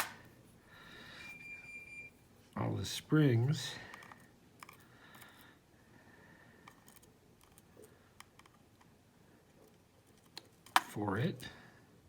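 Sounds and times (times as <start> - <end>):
faint clicks of lock parts: 3.9 - 5.4, 6.6 - 8.9.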